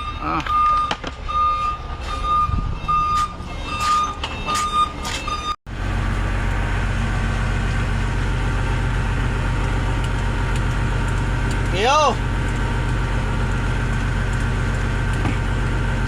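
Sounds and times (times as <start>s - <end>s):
high electronic warning beeps: 0.0s - 5.6s
large engine humming: 1.3s - 16.0s.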